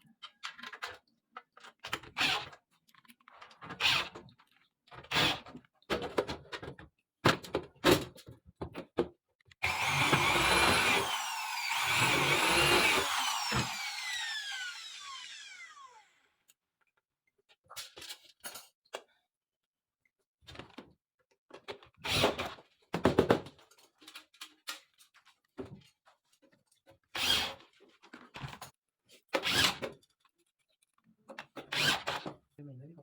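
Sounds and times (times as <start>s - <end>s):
electric motor whine: 9.6s - 16.2s.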